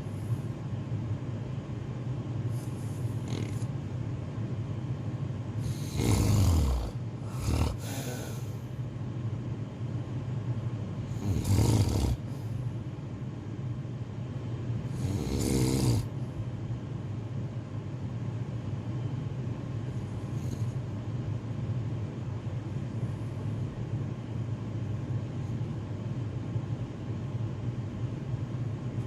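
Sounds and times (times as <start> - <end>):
steady low hum: 0.0 - 29.0
person snoring: 2.6 - 3.7, 5.6 - 8.6, 11.1 - 12.4, 14.9 - 16.1.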